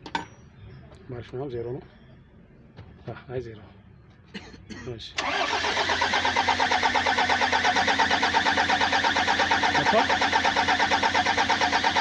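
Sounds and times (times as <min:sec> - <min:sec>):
starter motor cranking diesel engine: 0:05.2 - 0:12.0.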